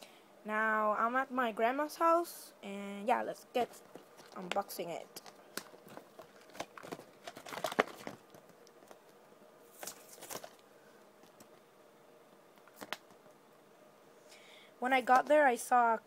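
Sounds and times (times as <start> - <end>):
packaging rustling and clicking: 3.8 - 10.6, 12.6 - 13.3.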